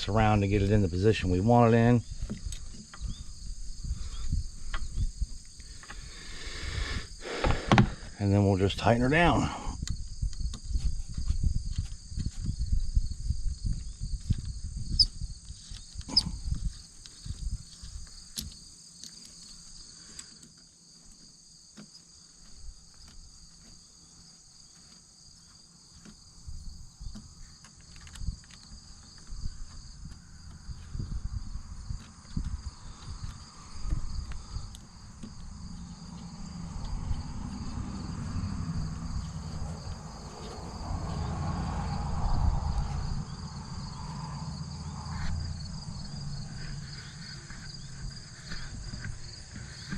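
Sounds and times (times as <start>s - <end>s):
high insect trilling: 14.8s - 19.9s, 32.6s - 49.9s.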